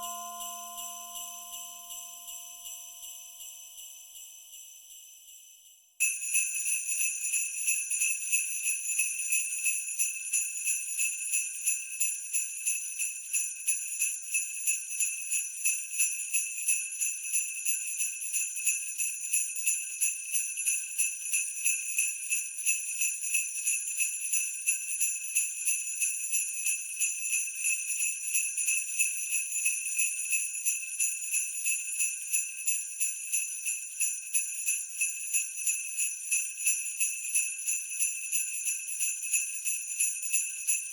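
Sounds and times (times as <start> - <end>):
sleigh bells jingling: 0.0 - 5.0, 18.0 - 40.9.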